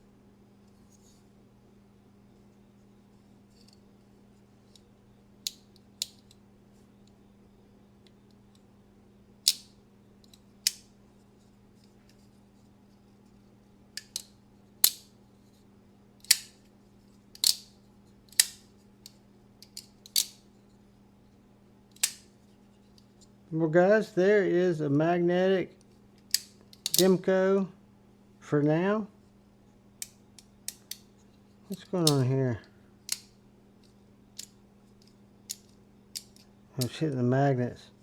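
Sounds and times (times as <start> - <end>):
folding knife snapping open and shut: 9.5 - 9.7, 16.2 - 16.6, 17.4 - 17.7, 19.6 - 20.4, 26.4 - 27.0.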